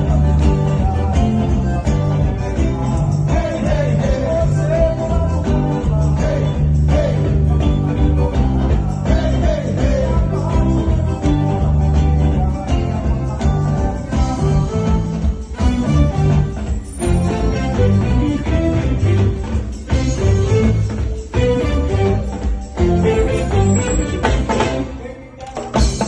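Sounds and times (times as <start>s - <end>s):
person singing: 0.0s - 15.3s
live band music with heavy bass: 0.0s - 26.0s.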